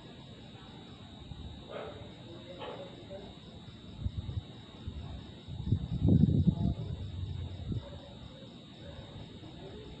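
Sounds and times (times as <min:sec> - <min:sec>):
night insects chirring: 0:00.0 - 0:10.0.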